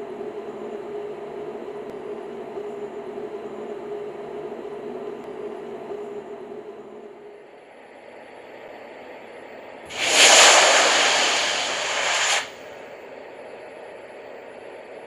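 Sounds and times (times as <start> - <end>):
loud rushing hiss burst: 9.9 - 12.8.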